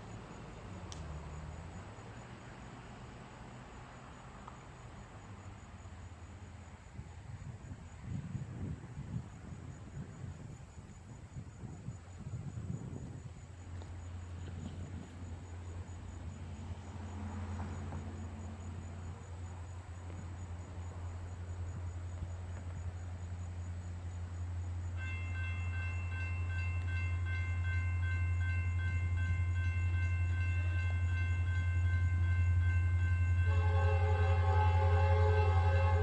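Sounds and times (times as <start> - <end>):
diesel locomotive engine rumble: 0.0 - 36.0
railroad crossing bell ringing: 24.8 - 36.0
locomotive horn: 33.3 - 36.0.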